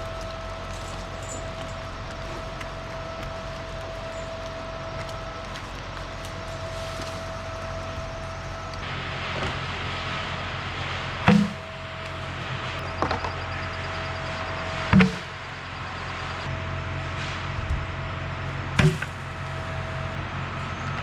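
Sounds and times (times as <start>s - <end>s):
steady engine hum: 0.0s - 21.0s
loud thumps: 14.9s - 15.4s.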